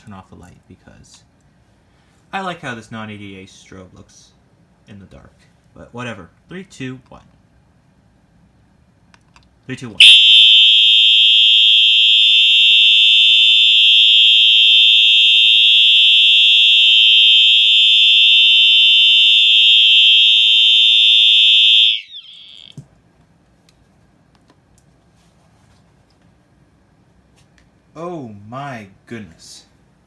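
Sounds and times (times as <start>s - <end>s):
loud high-pitched fire alarm horn: 10.0s - 22.5s.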